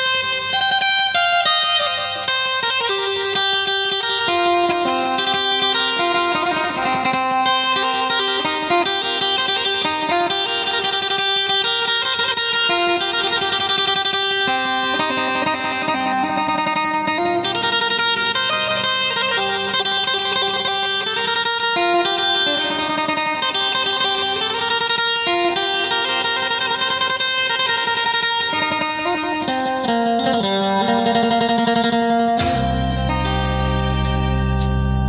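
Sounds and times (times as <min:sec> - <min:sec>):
plucked lute melody: 0:00.0 - 0:35.0
low drone note: 0:32.4 - 0:35.0.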